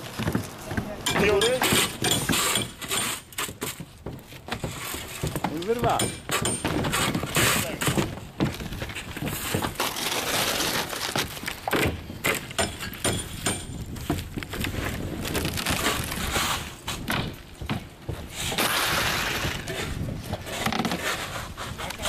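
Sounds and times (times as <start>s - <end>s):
knocks and scraping: 0.0s - 22.0s
wood cracking and breaking: 6.7s - 17.8s.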